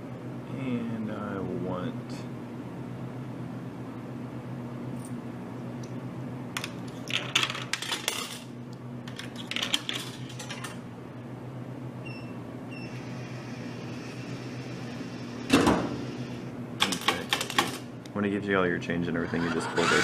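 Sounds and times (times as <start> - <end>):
low machine hum: 0.0 - 20.0
coins clattering into change tray: 7.1 - 8.5, 16.8 - 17.8.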